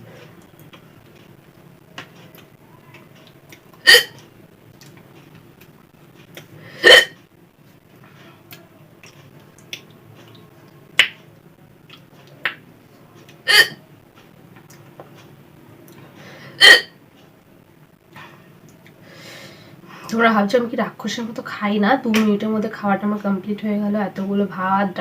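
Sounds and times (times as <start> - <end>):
person hiccupping: 3.8 - 4.2, 6.4 - 7.2, 13.5 - 13.8, 16.6 - 16.9.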